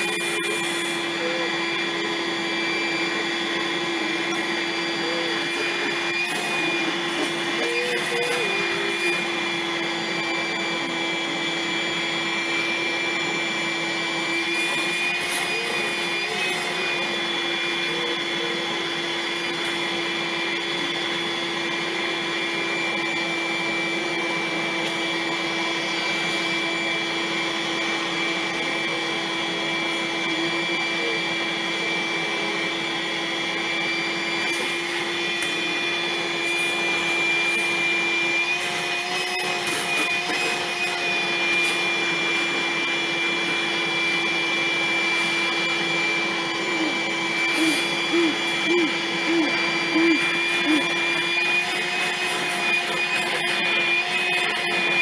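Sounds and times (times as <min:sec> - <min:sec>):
vacuum cleaner running: 0:00.0 - 0:55.0.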